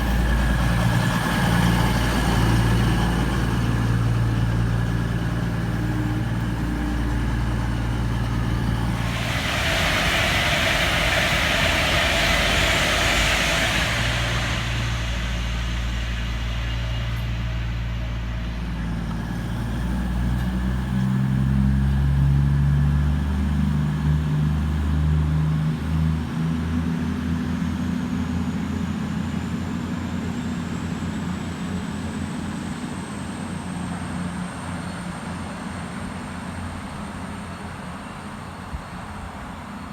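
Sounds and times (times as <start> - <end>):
loud hiss: 0.0 - 20.2
train engine hum: 0.0 - 28.7.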